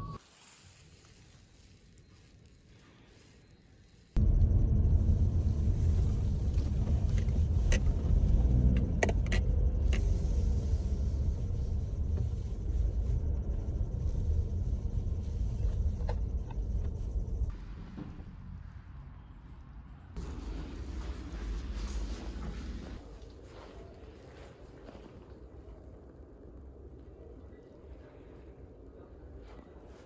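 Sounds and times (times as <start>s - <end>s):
car road and engine rumble: 4.2s - 18.7s.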